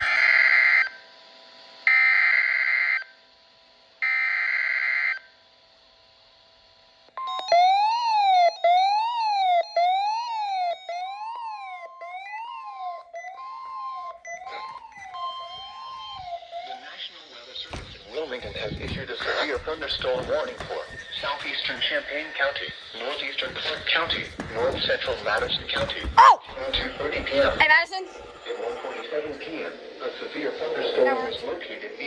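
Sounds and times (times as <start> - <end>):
siren-like attention tone: 0.0 - 3.2, 7.2 - 25.9.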